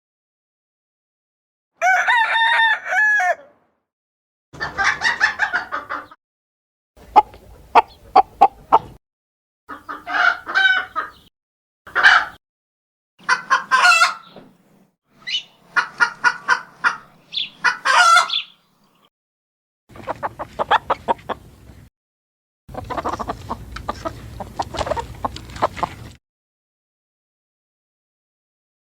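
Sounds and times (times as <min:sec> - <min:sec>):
rooster crowing: 0:01.8 - 0:03.6
hens clucking: 0:04.6 - 0:06.2, 0:07.0 - 0:09.0, 0:09.7 - 0:11.3, 0:11.9 - 0:12.4, 0:13.2 - 0:14.5, 0:15.3 - 0:18.6, 0:19.9 - 0:21.8, 0:22.7 - 0:26.2.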